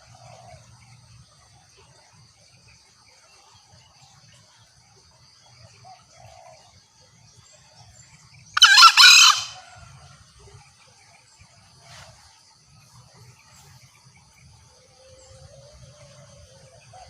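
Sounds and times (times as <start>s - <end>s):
junglefowl two-part call: 8.6s - 9.8s.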